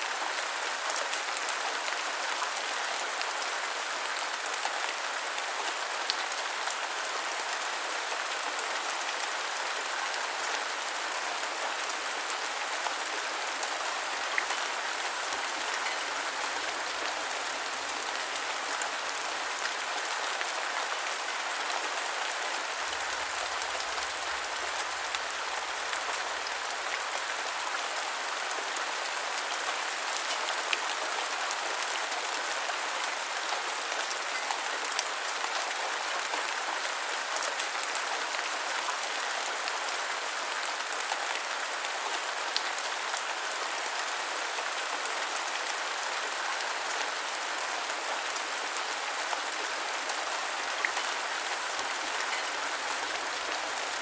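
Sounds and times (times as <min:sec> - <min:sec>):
steady rain pattering: 0:00.0 - 0:54.0.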